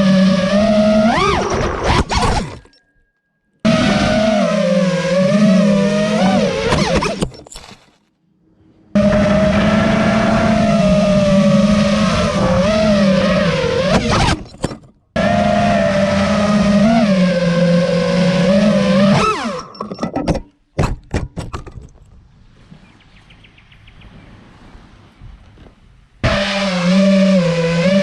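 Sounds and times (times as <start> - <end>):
quadcopter motors whining: 0.0 - 2.8, 3.6 - 7.4, 8.9 - 14.6, 15.2 - 19.8, 26.2 - 28.0.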